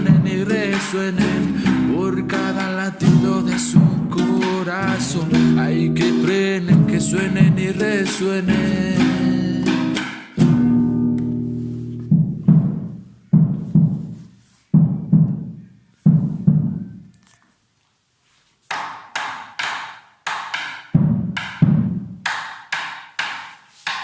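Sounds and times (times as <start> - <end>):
drum break: 0.0 - 10.7, 12.1 - 16.9, 21.0 - 22.2.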